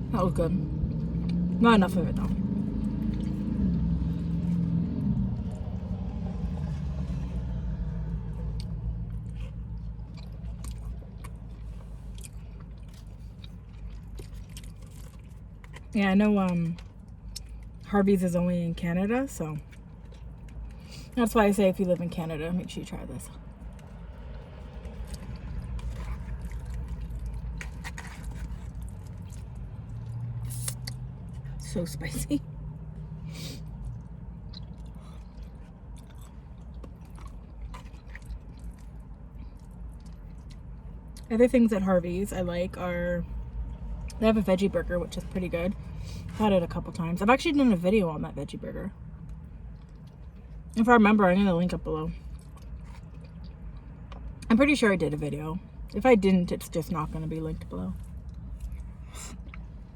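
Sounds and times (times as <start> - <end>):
close-up chewing: 0.0 - 17.9, 19.1 - 22.3, 23.3 - 31.7, 32.9 - 41.3, 49.1 - 50.8, 52.2 - 54.5, 57.6 - 59.9
low vehicle rumble: 0.0 - 59.9.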